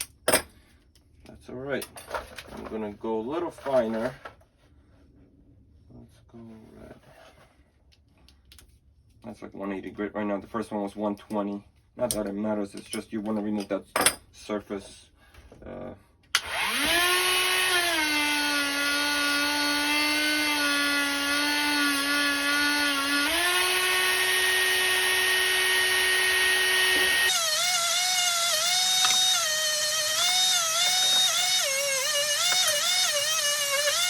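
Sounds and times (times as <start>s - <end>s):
rotary tool grinding metal: 16.4s - 34.0s.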